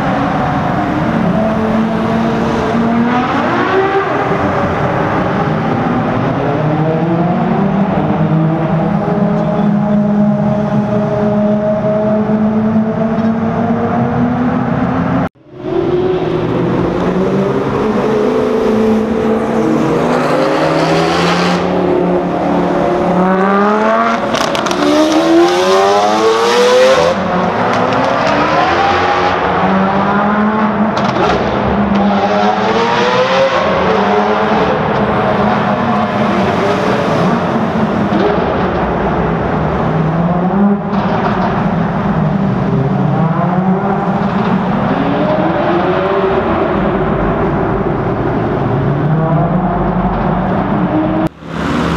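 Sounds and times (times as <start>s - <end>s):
car engine accelerating: 0.0s - 51.9s
loud exhaust noise: 50.7s - 51.9s.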